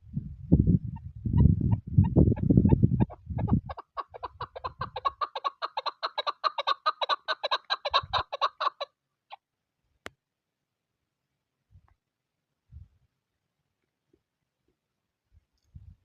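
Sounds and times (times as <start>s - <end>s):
wind on microphone: 0.0s - 5.2s, 7.9s - 8.2s, 12.7s - 13.1s, 15.6s - 16.0s.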